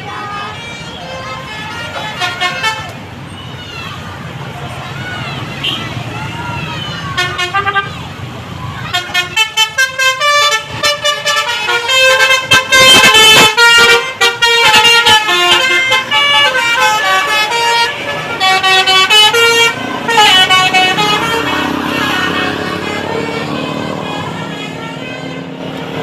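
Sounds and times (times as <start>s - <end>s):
multi-tone musical air horn: 0.2s - 2.9s, 7.2s - 8.0s, 8.9s - 26.0s.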